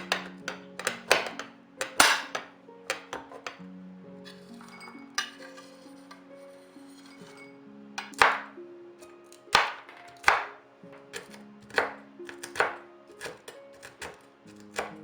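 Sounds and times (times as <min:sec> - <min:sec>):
knife chopping on cutting board: 0:00.0 - 0:03.6, 0:08.0 - 0:08.6, 0:09.4 - 0:15.0
soft background music: 0:00.0 - 0:15.0.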